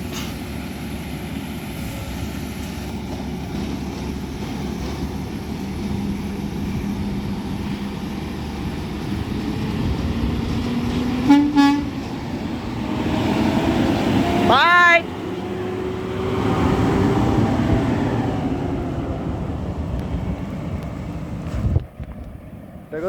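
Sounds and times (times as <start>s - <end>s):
garbage truck engine running: 0.0s - 23.0s
truck air horn blast: 11.2s - 12.0s.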